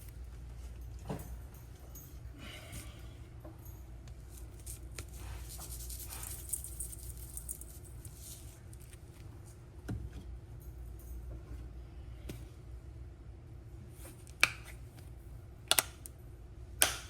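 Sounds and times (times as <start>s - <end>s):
seasoning sprinkling: 4.3s - 9.0s.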